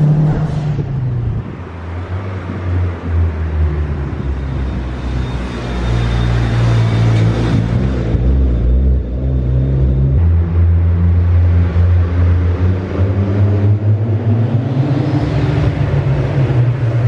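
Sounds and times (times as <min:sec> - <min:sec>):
turbocharged car engine revving: 0:00.0 - 0:17.0.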